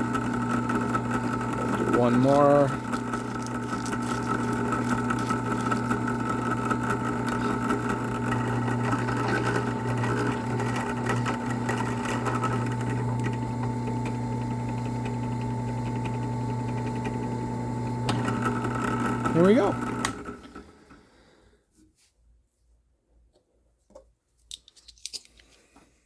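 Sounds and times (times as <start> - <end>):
motor-driven crimper humming: 0.0 - 20.6.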